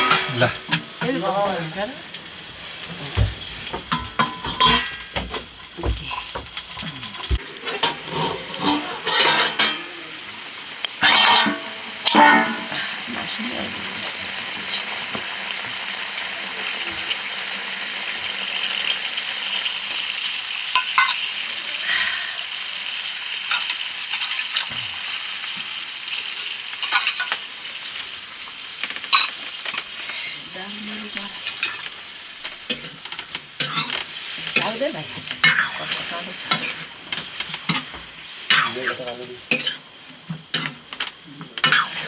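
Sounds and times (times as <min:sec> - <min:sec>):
food sizzling in a pan: 0:00.0 - 0:42.0
metal spoon knocking on pan: 0:03.1 - 0:06.6, 0:11.0 - 0:12.8.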